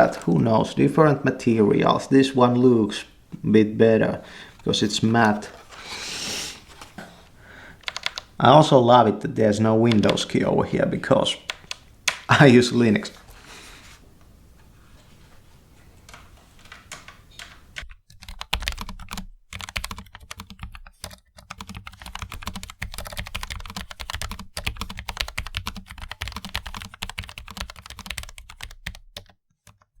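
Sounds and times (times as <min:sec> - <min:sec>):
mechanical keyboard typing: 0:07.8 - 0:08.3, 0:11.4 - 0:12.3, 0:16.1 - 0:30.0.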